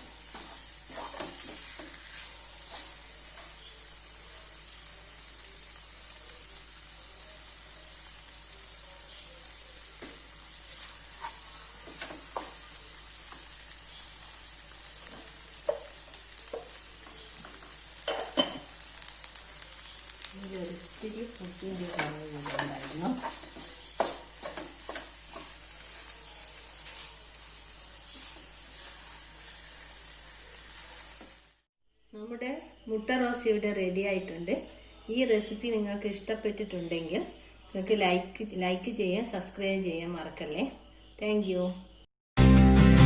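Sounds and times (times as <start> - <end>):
spatula stirring and scraping: 0.0 - 3.8, 10.0 - 31.5
food sizzling in a pan: 0.0 - 31.7.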